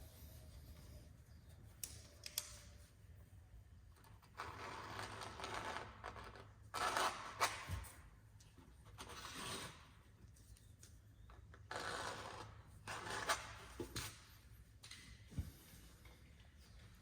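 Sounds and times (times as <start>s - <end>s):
snips cutting sheet metal: 6.7s - 8.0s.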